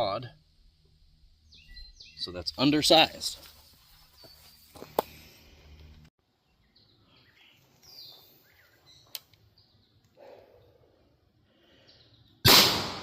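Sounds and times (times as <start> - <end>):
faint birds chirping: 0.0 - 12.4
shotgun blast: 12.4 - 13.0.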